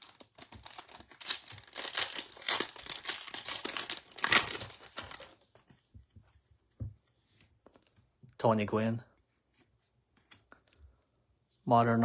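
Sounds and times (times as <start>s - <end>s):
card pack wrapper crinkling: 0.0s - 5.5s.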